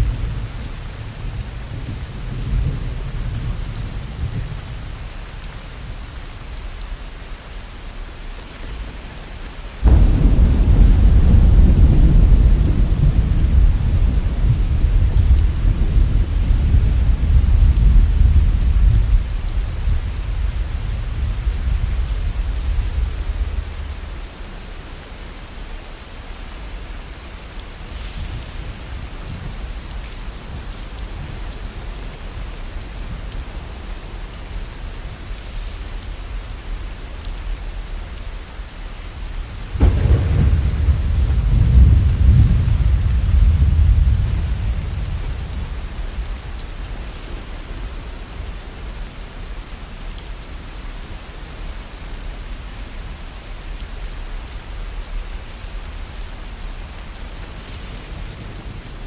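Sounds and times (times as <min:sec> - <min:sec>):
heavy rain: 0:00.0 - 0:59.0
thunder rumbling: 0:09.8 - 0:24.7, 0:39.2 - 0:48.6.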